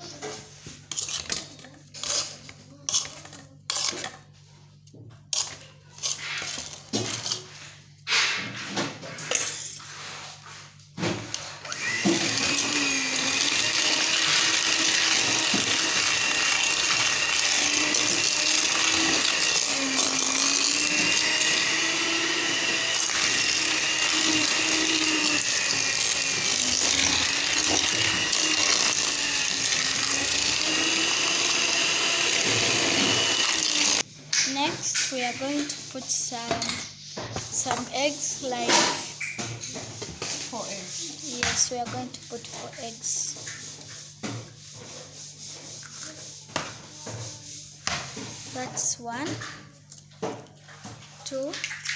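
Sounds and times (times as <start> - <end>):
electric mixer motor running: 11.6 - 34.1.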